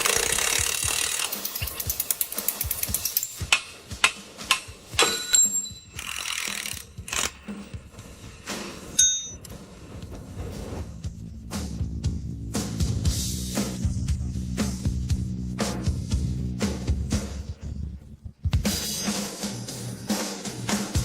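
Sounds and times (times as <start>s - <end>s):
rapid ratchet clicking: 0.0s - 7.7s
metallic clicks and knocks: 0.2s - 7.8s
high metallic rings: 1.3s - 3.8s, 4.5s - 7.0s, 8.9s - 9.5s.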